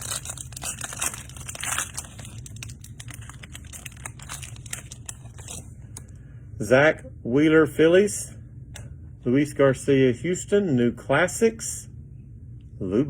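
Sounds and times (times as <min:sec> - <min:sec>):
foil wrapper crinkling: 0:00.0 - 0:06.1.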